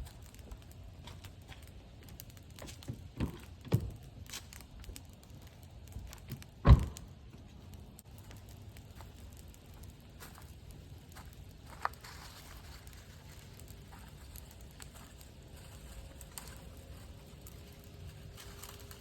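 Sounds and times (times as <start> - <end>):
firewood clicks and knocks: 0.0 - 19.0
heavy thud: 6.6 - 7.0.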